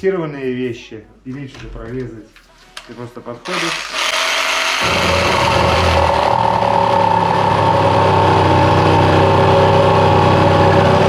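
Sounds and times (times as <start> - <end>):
reciprocating saw sawing: 3.5 - 11.0.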